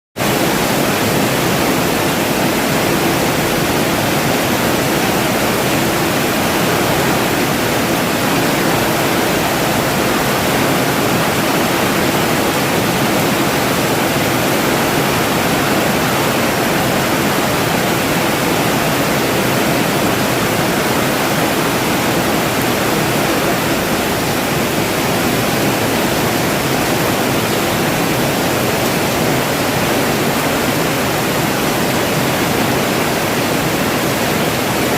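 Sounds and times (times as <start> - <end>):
steady rain hiss: 0.2 - 34.9.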